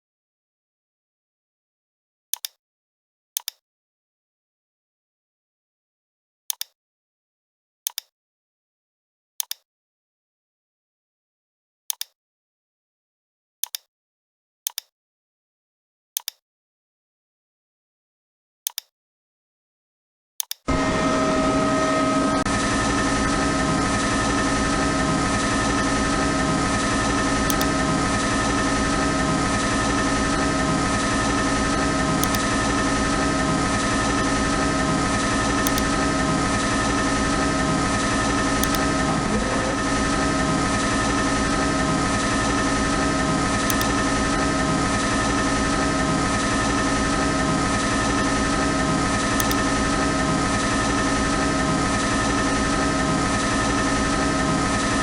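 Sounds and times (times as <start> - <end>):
lathe machine hum: 20.7 - 55.0
low machine pulse: 20.7 - 55.0.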